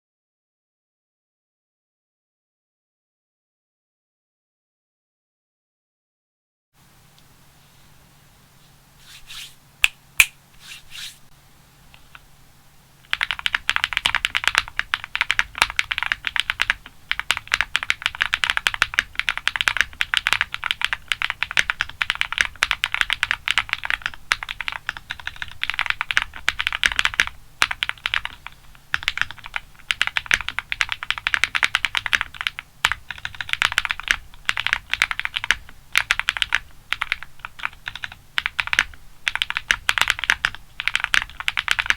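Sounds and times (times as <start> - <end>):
mechanical keyboard typing: 13.1 - 41.9.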